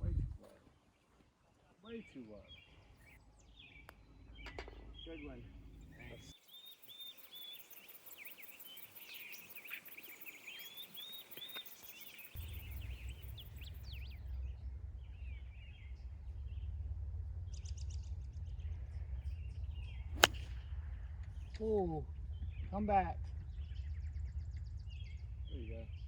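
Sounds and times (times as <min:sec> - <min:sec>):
steady low rumble: 0:00.0 - 0:00.4, 0:03.0 - 0:07.0, 0:12.2 - 0:26.0
birds singing: 0:01.8 - 0:16.8, 0:17.5 - 0:20.6, 0:21.2 - 0:26.0
golf club striking ball: 0:20.2 - 0:20.6.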